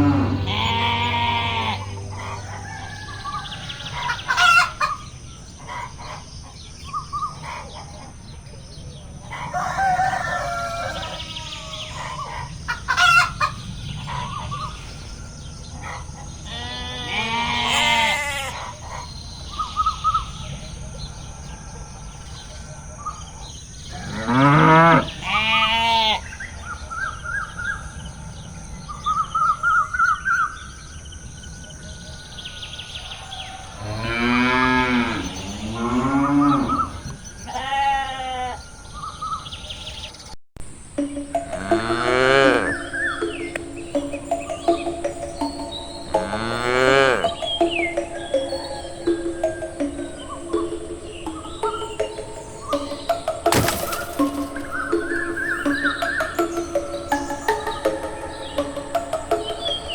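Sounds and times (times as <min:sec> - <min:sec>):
livestock calling: 0:00.0 - 0:05.0, 0:09.3 - 0:14.8, 0:15.9 - 0:20.3, 0:23.9 - 0:26.3, 0:33.5 - 0:38.7, 0:41.4 - 0:59.9
rooster crowing: 0:00.0 - 0:05.0, 0:09.3 - 0:12.3
chickens clucking: 0:00.0 - 0:08.4, 0:09.2 - 0:14.9.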